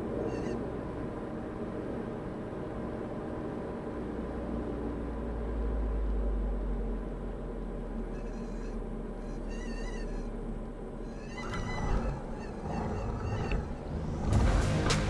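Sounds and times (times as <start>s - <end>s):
aircraft engine cabin rumble: 8.4s - 15.0s.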